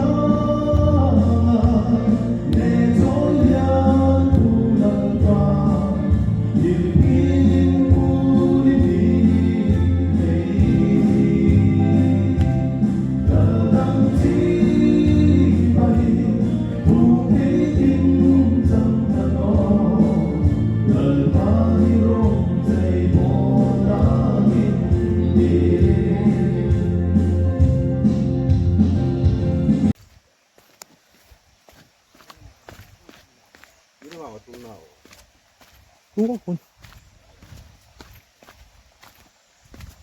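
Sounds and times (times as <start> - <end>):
gospel song with group singing: 0.0 - 29.9.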